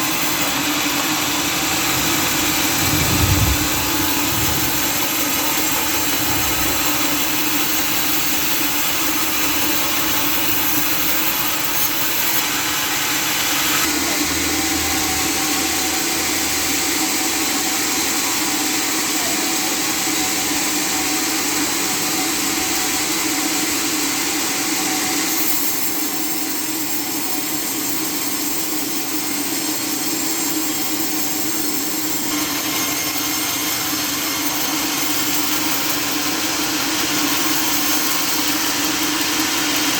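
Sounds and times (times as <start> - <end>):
sawmill machinery running: 0.0 - 20.7, 29.2 - 39.9.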